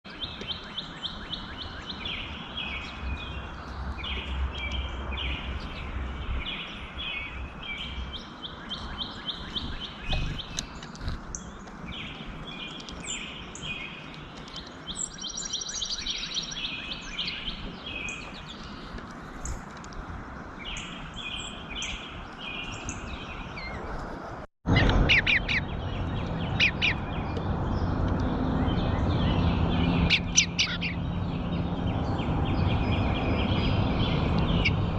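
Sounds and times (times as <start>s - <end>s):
small birds chirping: 0.1s - 24.0s, 24.7s - 34.9s.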